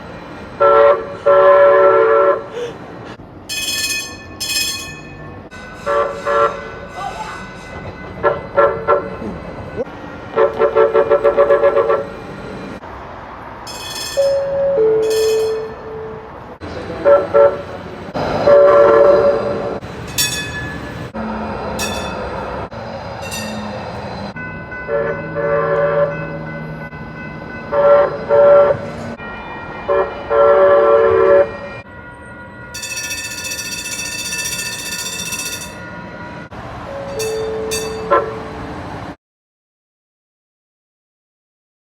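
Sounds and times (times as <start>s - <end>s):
train horn blasts: 0.6s - 2.5s, 5.8s - 7.0s, 8.2s - 9.2s, 10.3s - 12.2s, 13.8s - 19.8s, 24.9s - 26.3s, 27.6s - 29.2s, 29.8s - 31.8s, 36.9s - 38.6s
train warning bell dings: 3.4s - 12.8s, 13.7s - 17.5s, 20.0s - 21.1s, 21.7s - 22.6s, 23.2s - 38.6s.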